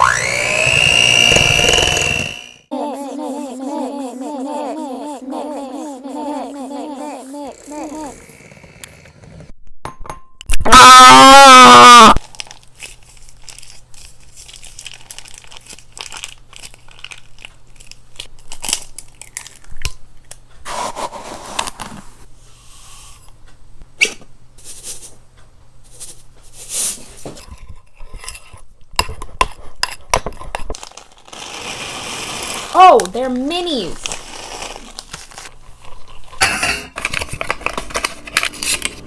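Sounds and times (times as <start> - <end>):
crinkling and tearing packaging: 12.2 - 20.0, 30.7 - 36.4, 37.0 - 39.0.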